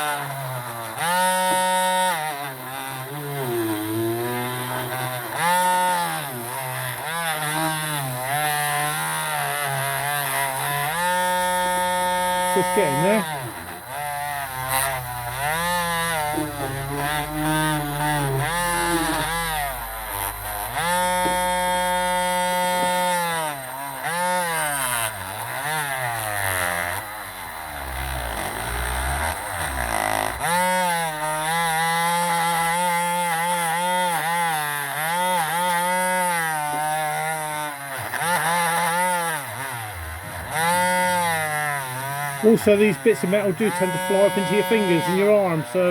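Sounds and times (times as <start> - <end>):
drill wire brush scouring metal: 0.0 - 34.2, 38.0 - 45.9.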